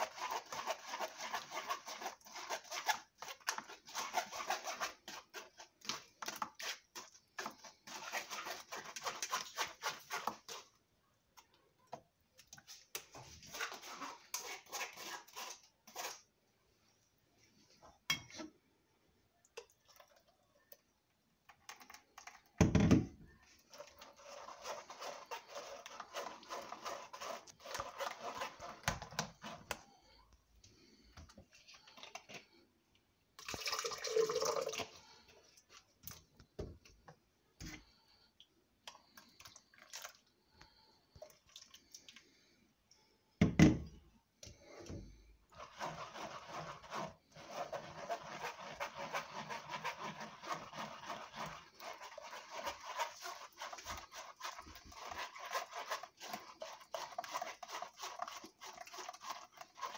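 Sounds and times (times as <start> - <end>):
juice dripping through strainer: 33.4 - 36.4, 38.8 - 43.0.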